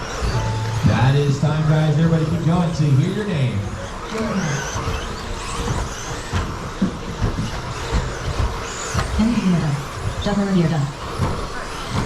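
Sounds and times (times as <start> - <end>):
electric motor whine: 0.0 - 12.0
trucks knocking on boards: 4.7 - 12.0.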